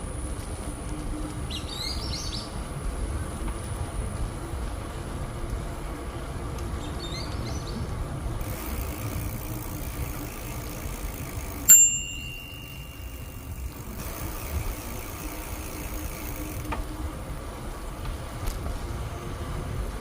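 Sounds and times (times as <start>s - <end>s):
bicycle ride rumble: 0.0s - 20.0s
bicycle bell ding: 11.6s - 14.0s.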